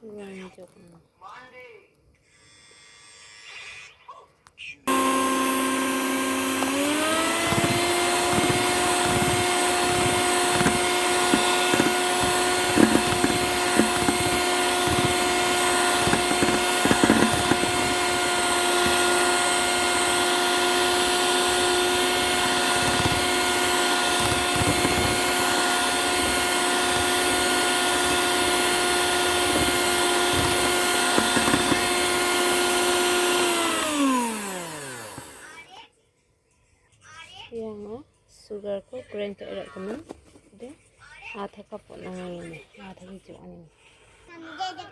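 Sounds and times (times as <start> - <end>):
mixer grinder motor whine: 4.9 - 35.7.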